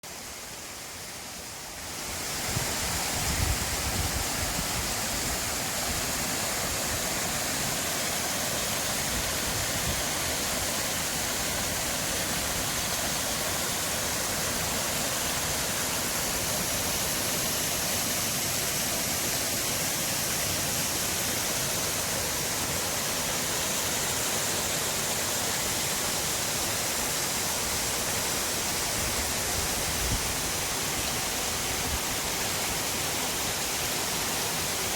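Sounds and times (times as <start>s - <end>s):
forest stream rushing: 0.0s - 34.9s
low rumble of wind: 2.2s - 7.3s.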